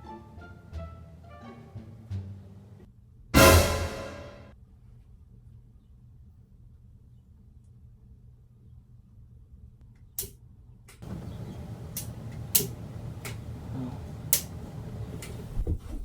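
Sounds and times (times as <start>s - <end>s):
steady hiss: 11.0s - 15.6s.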